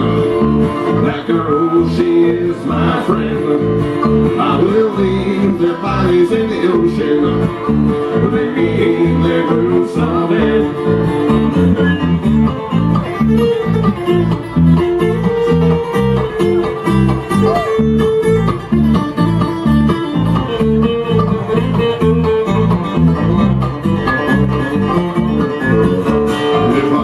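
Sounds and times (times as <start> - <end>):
bluegrass band playing: 0.0 - 27.0
picked banjo: 0.0 - 27.0.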